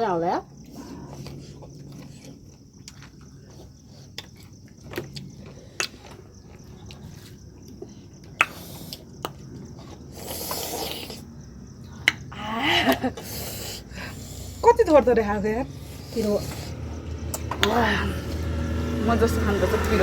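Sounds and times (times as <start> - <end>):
wet biting and chewing: 1.1 - 11.4
breathy hiss: 8.4 - 9.1, 10.1 - 11.4, 12.5 - 14.7, 15.7 - 17.2.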